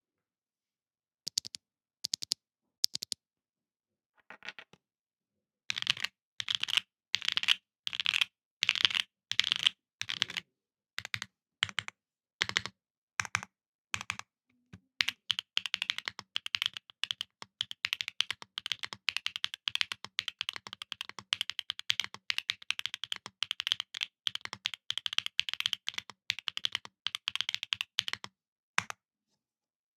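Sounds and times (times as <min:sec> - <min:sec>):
mechanical keyboard typing: 0:01.3 - 0:03.1, 0:15.0 - 0:28.3.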